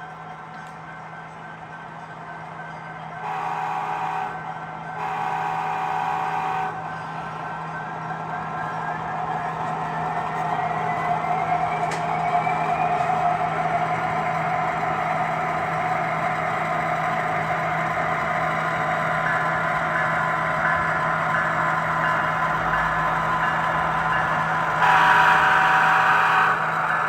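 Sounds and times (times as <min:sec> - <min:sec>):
model locomotive air horns: 0:03.2 - 0:04.4, 0:05.0 - 0:06.8, 0:24.8 - 0:27.0.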